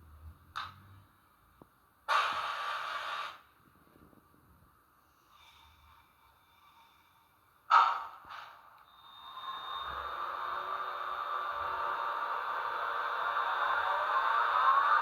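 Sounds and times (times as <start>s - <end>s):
compressed air hiss from speaker: 2.1s - 3.5s.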